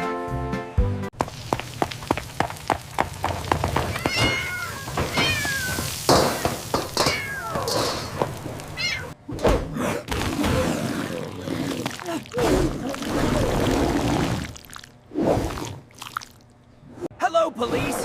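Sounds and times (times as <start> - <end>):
cat meowing: 3.9 - 7.7, 8.8 - 9.2.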